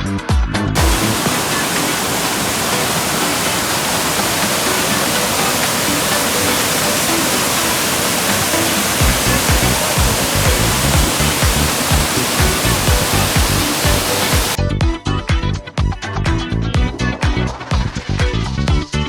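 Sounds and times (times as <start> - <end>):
dance music with heavy beat: 0.8 - 14.6
waterfall rushing: 0.8 - 14.6.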